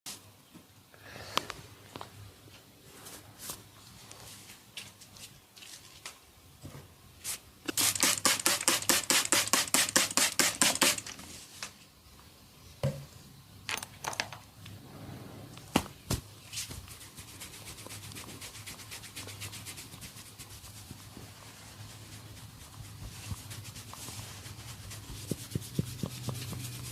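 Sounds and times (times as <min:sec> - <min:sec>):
hands rubbing oiled scalp: 0:16.5 - 0:26.9.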